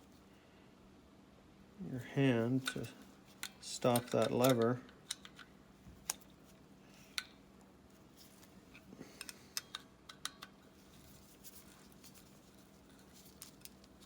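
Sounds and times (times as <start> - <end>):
small metal parts clicking: 2.6 - 5.5, 8.7 - 10.6.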